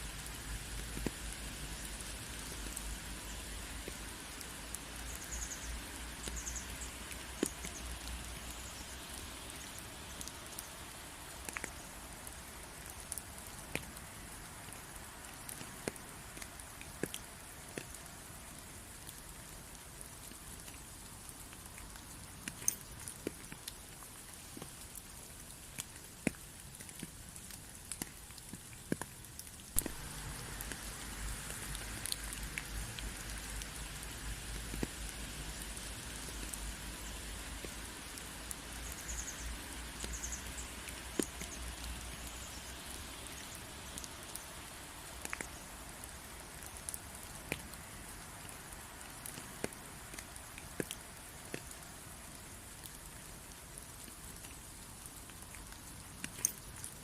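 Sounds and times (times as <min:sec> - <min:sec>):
rain drop ticks: 0:00.0 - 0:57.0
rain falling: 0:00.0 - 0:57.0.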